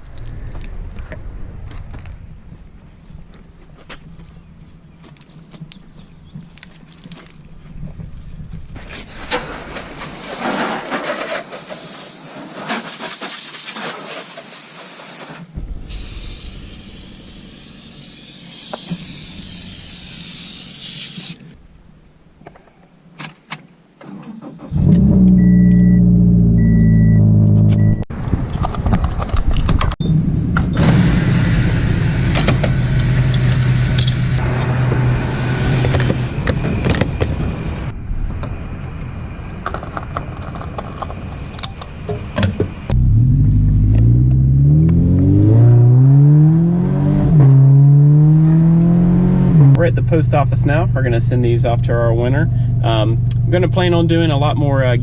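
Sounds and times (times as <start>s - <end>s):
hissing noise: 8.9s - 21.6s
car engine starting and idling: 24.0s - 28.8s, 29.9s - 46.3s.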